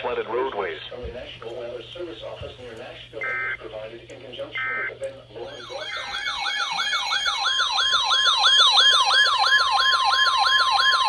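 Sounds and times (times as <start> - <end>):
steady warning tone: 3.1 - 11.0
siren-like alarm yelp: 4.7 - 11.0.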